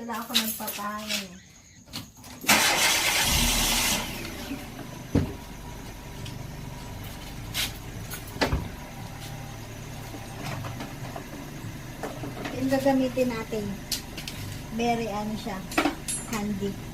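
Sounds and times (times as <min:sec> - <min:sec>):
car engine idling: 0:02.5 - 0:16.9.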